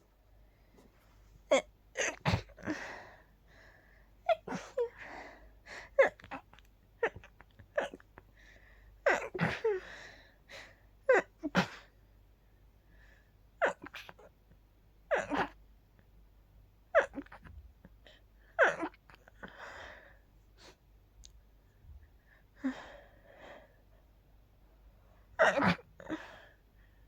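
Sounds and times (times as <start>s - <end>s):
person sneezing: 1.5s - 2.8s, 11.2s - 11.9s, 25.4s - 26.2s
breathing: 2.7s - 4.2s, 8.3s - 9.0s, 9.8s - 10.8s, 12.9s - 13.4s, 19.4s - 20.8s, 22.2s - 23.9s.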